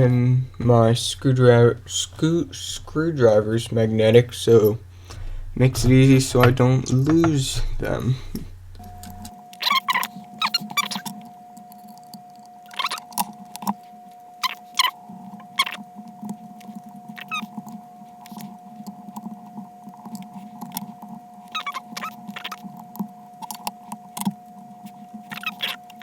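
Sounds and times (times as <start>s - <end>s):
faint steady hum: 0.0s - 26.0s
screwdriver squeaky scraping clicks: 6.3s - 18.5s, 20.0s - 26.0s.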